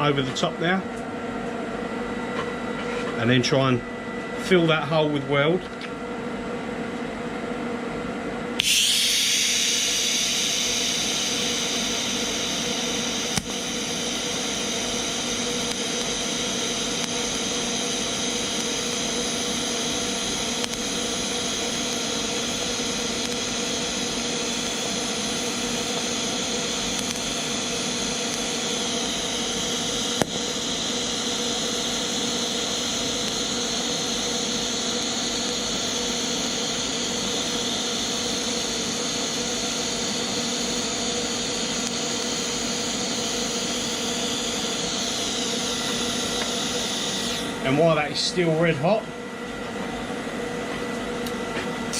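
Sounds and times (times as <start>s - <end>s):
welding arc hissing: 8.6s - 48.6s.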